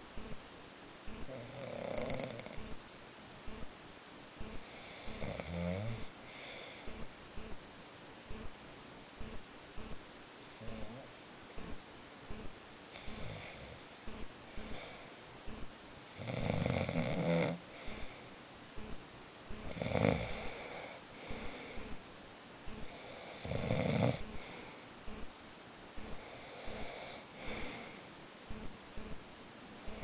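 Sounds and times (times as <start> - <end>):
person snoring: 1.2 - 2.8, 4.7 - 7.0, 10.5 - 11.1, 12.9 - 13.8, 16.2 - 18.1, 19.7 - 22.0, 22.8 - 24.7, 26.1 - 28.0
soft breaths: 4.4 - 7.6, 9.2 - 25.3, 25.9 - 30.0.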